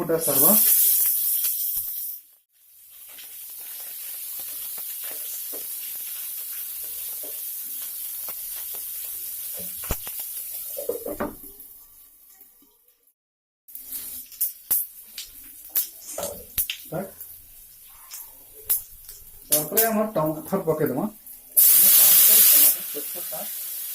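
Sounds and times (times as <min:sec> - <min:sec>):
seeds sizzling in hot oil: 0:00.1 - 0:12.2, 0:13.7 - 0:20.6, 0:21.2 - 0:23.9
seeds crackling and popping: 0:00.3 - 0:10.9, 0:13.7 - 0:20.1.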